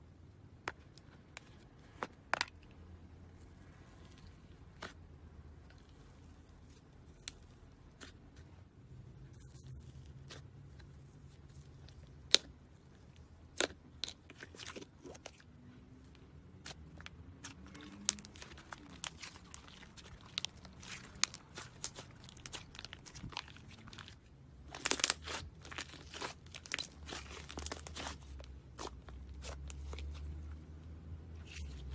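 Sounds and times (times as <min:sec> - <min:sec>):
slime crunching: 0:09.2 - 0:15.5, 0:16.1 - 0:31.9
slime crackling and popping: 0:17.4 - 0:30.2.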